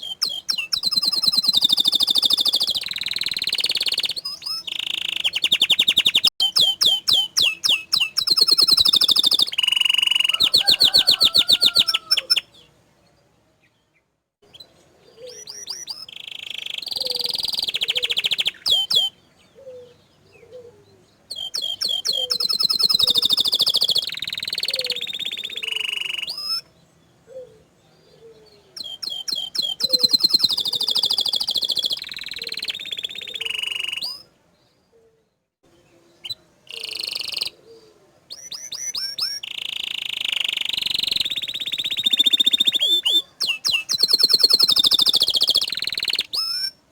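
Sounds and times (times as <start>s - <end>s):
canary singing trills: 0.0s - 12.8s, 14.4s - 46.9s.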